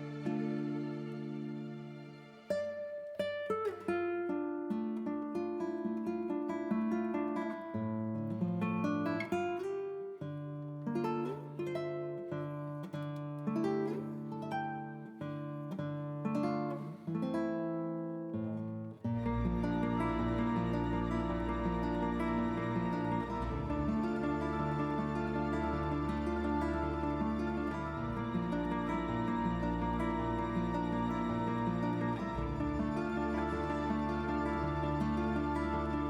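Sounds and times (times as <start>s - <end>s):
acoustic guitar picking melody: 0.0s - 36.0s.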